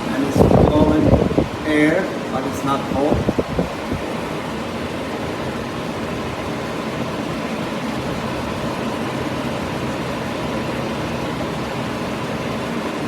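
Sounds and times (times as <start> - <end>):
air conditioner fan blowing: 0.0 - 13.0.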